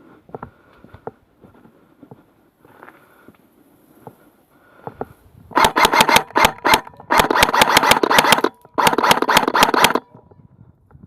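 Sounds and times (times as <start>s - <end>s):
airsoft gun firing: 5.5s - 10.1s.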